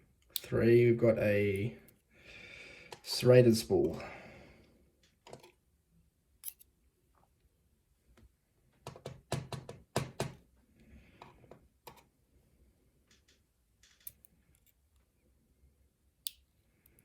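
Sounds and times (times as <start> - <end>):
lock pins clicking and tapping: 6.4 - 6.7, 8.8 - 10.4, 13.0 - 14.8.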